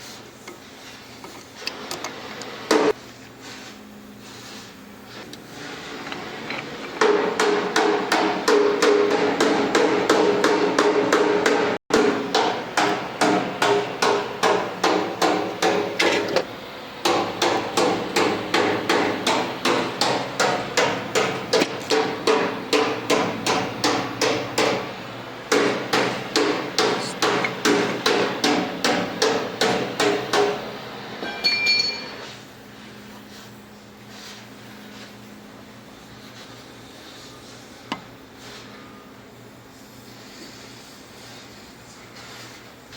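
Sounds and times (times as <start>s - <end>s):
hammer striking metal: 7.0s - 16.1s, 17.0s - 24.8s, 25.5s - 30.6s.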